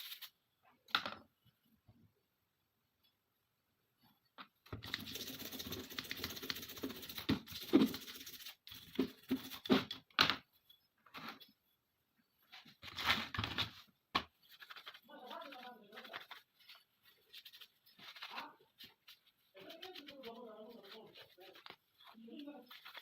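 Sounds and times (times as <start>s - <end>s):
rapid scraping on small parts: 4.8s - 9.8s, 14.4s - 23.0s.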